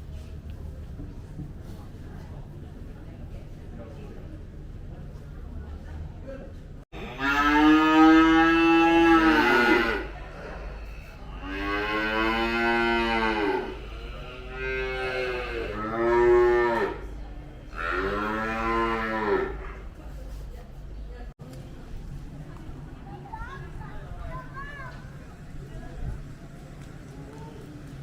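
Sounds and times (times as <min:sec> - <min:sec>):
cattle mooing: 0:07.0 - 0:17.1, 0:17.7 - 0:19.7.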